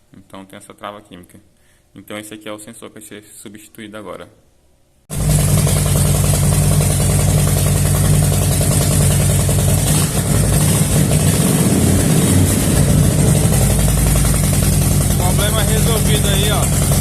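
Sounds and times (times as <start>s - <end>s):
motorcycle engine idling: 5.1s - 17.0s.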